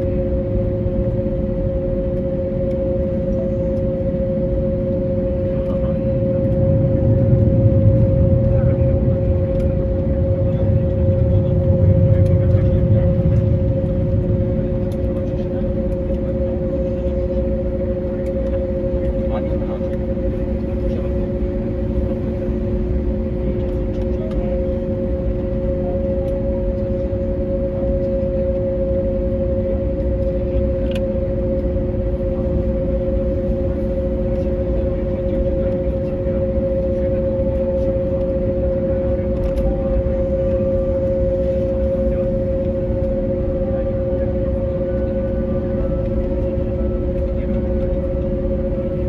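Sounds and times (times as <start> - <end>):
jet engines idling hum: 0.0 - 49.0
low rumble: 4.7 - 26.0.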